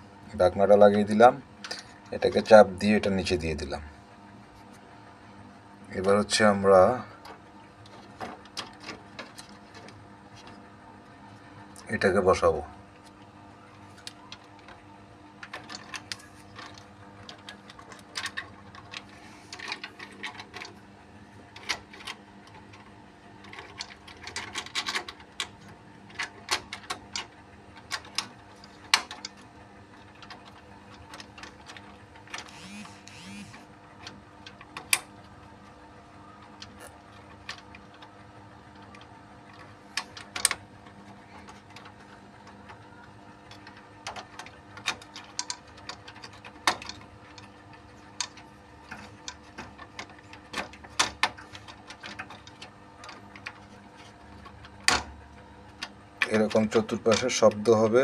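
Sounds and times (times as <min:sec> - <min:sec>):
fasteners clicking into place: 0:38.8 - 0:40.6.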